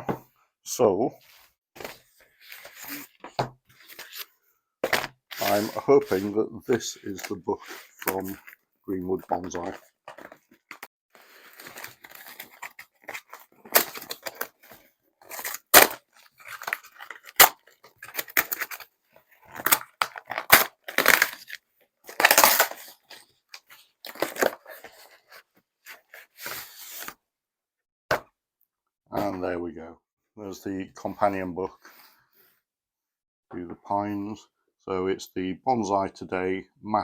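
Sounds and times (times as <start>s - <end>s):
packaging tearing and rustling: 4.9s - 6.2s, 9.3s - 18.9s, 19.5s - 27.1s.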